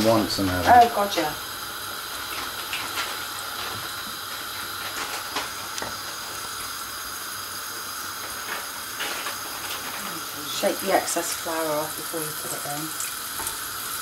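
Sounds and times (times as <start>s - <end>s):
chicken sizzling in oil: 0.0s - 14.0s
oil popping: 0.0s - 14.0s.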